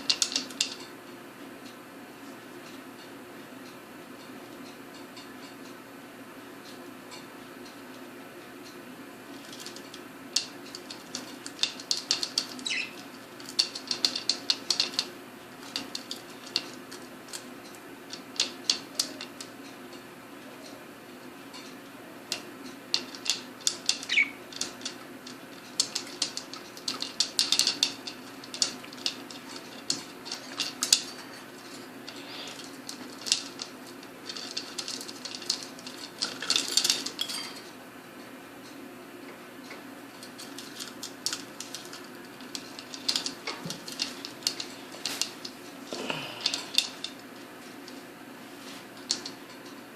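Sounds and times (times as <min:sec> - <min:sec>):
budgerigars chattering: 0:24.1 - 0:24.4.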